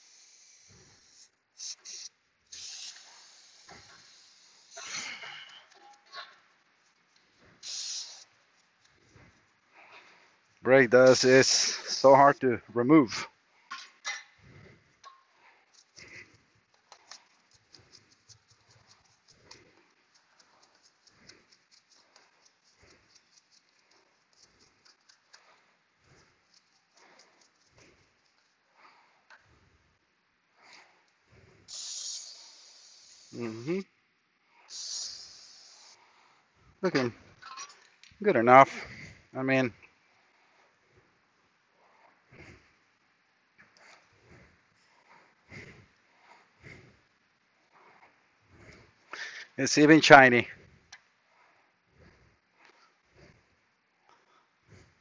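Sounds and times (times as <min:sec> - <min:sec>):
aerosol spray hissing bursts: 0:00.0 - 0:05.7, 0:07.6 - 0:08.3, 0:31.7 - 0:33.7, 0:34.7 - 0:36.0
brush scrubbing metal: 0:00.0 - 0:12.2, 0:15.0 - 0:29.4.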